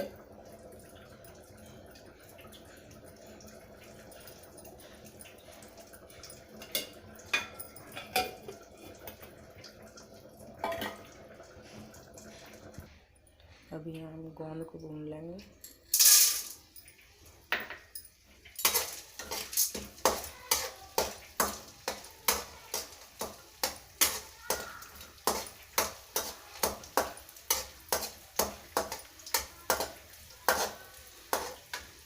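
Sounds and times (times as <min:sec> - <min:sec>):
faint frying: 0:00.0 - 0:32.0
spoon knocking and scraping pan: 0:18.6 - 0:32.0.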